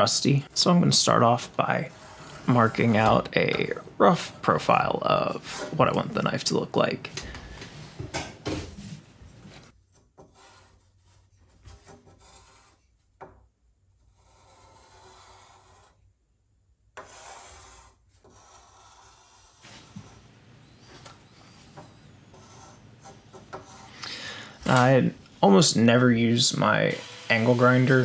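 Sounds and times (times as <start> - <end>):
tool scratching steel sheet: 0.6 - 3.8, 10.2 - 13.0, 14.1 - 16.0, 17.0 - 24.0.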